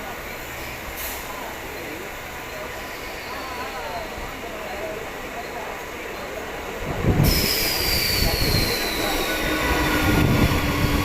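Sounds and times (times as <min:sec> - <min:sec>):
train rushing on track: 0:00.0 - 0:11.0
high wheel squeal: 0:07.3 - 0:11.0.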